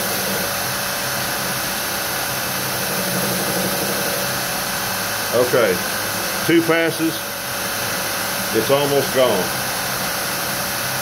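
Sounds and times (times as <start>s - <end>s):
belt grinder grinding steel: 0.0s - 6.9s.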